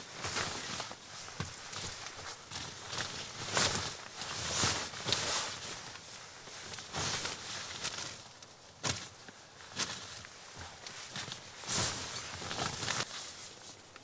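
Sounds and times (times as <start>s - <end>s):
crunching and rustling: 0.0s - 14.0s
handling of gear: 0.0s - 14.0s
footsteps: 8.8s - 13.7s.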